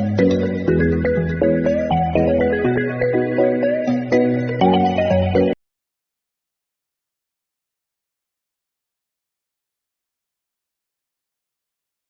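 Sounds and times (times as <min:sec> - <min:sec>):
melodic background music: 0:00.0 - 0:05.6.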